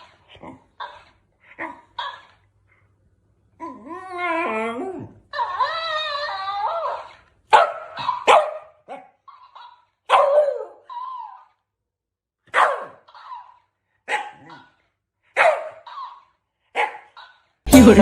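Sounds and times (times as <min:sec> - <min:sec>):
dog whining: 0:03.6 - 0:11.7, 0:12.8 - 0:14.8, 0:15.5 - 0:17.6
dog barking: 0:07.5 - 0:10.8, 0:12.5 - 0:16.1, 0:16.7 - 0:17.3.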